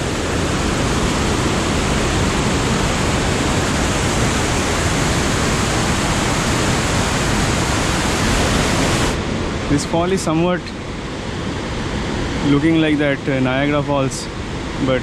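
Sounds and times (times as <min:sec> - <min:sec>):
waterfall rushing: 0:00.0 - 0:10.4.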